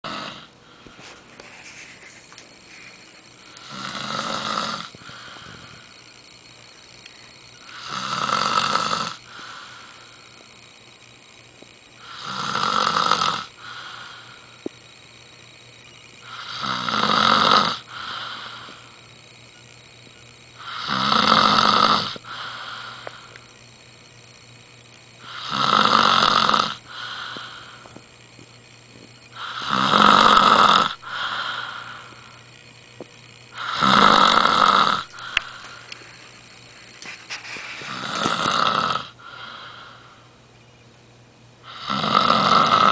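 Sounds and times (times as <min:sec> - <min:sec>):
person snoring: 0:00.0 - 0:00.5, 0:02.7 - 0:06.0, 0:07.6 - 0:10.4, 0:12.0 - 0:14.6, 0:16.2 - 0:19.1, 0:20.6 - 0:23.5, 0:25.2 - 0:28.0, 0:29.3 - 0:32.4, 0:33.5 - 0:36.2, 0:37.8 - 0:40.2, 0:41.6 - 0:42.9.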